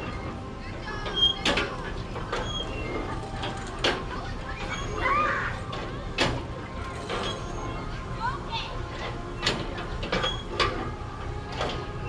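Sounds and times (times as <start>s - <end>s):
metallic clacks from spinning ride: 0.0s - 8.0s, 8.8s - 12.0s
children's voices: 3.8s - 9.0s.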